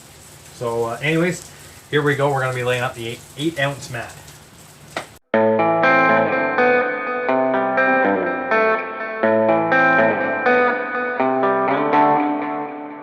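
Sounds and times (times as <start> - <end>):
plucked electric guitar with effects: 5.3 - 13.0.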